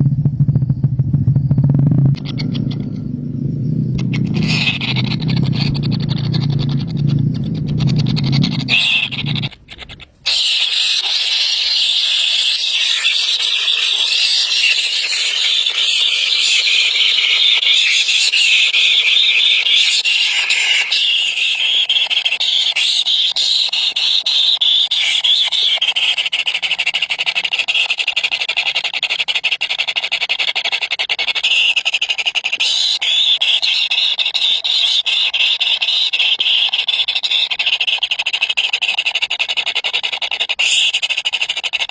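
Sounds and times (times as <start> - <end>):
nestling birds cheeping: 0.0 - 25.9.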